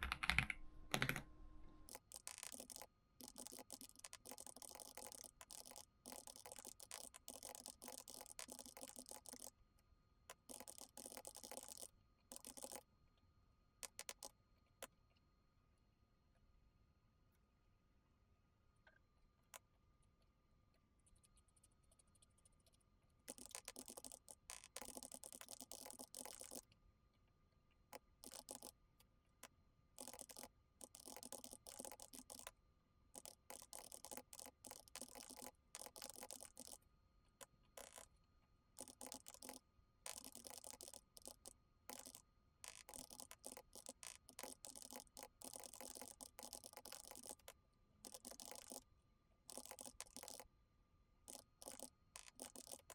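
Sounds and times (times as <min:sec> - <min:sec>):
typing on a computer keyboard: 0:00.0 - 0:09.5, 0:10.3 - 0:12.8, 0:13.8 - 0:14.4, 0:21.2 - 0:26.7, 0:27.9 - 0:28.8, 0:30.0 - 0:36.8, 0:37.4 - 0:38.1, 0:38.8 - 0:48.8, 0:49.5 - 0:50.5, 0:51.3 - 0:52.9.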